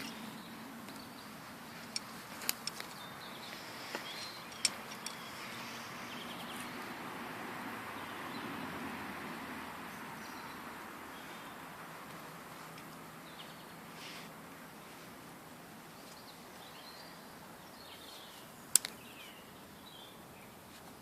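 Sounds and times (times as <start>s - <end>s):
birds singing and chirping: 0.0s - 7.1s, 7.8s - 8.8s, 9.5s - 15.0s, 15.7s - 20.8s
steady outdoor hiss: 0.0s - 21.0s
sharp clicks: 3.9s - 5.2s, 18.7s - 19.0s.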